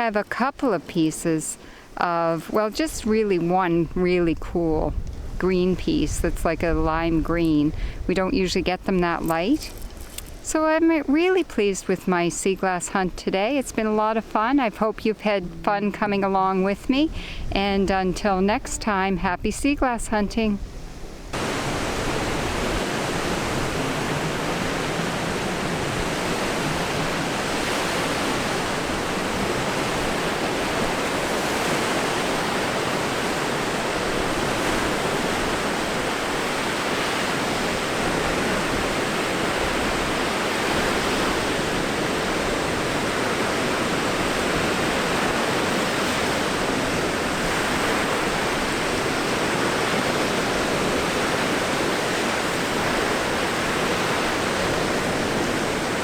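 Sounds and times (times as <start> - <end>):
strong wind: 1.2 - 56.0
surf breaking on shore: 21.1 - 56.0.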